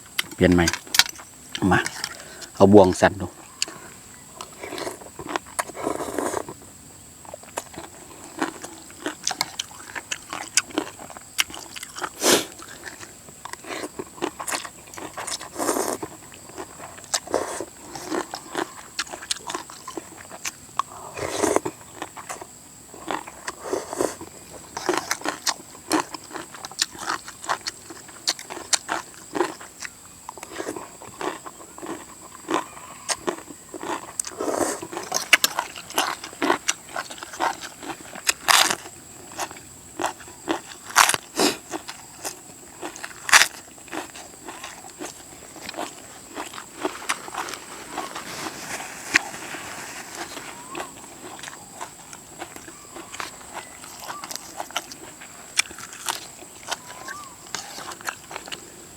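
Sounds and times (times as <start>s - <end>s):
person slurping and chewing: 4.4s - 6.6s, 7.5s - 29.6s, 30.4s - 55.0s.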